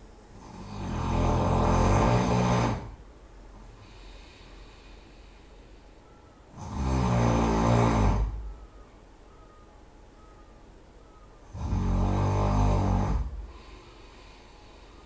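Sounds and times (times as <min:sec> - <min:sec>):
quiet breathing: 0:00.0 - 0:15.0
person snoring loudly: 0:00.4 - 0:03.0, 0:06.5 - 0:08.5, 0:11.5 - 0:14.4.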